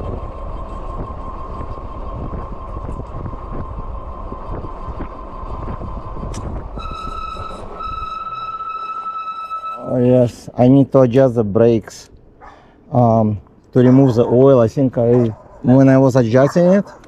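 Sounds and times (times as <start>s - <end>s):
electric motor whine: 0.0s - 9.8s
wind: 0.0s - 17.0s
disc brake squealing: 4.4s - 10.5s.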